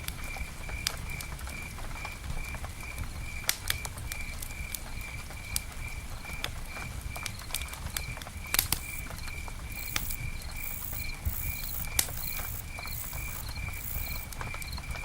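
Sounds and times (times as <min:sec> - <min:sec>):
campfire crackling: 0:00.0 - 0:15.0
burning wood popping: 0:04.7 - 0:15.0
insect chirping: 0:08.6 - 0:14.8
high buzzing: 0:09.8 - 0:14.3.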